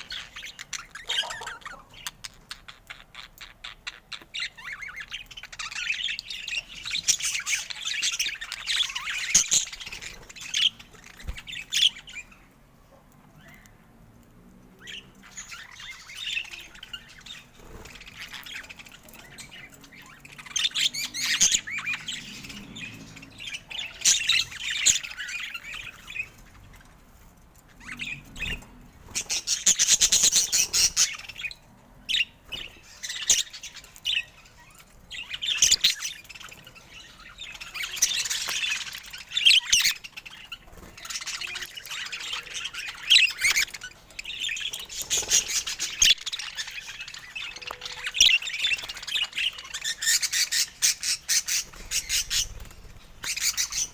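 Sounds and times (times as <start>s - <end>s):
budgerigar chatter: 0.0s - 3.8s.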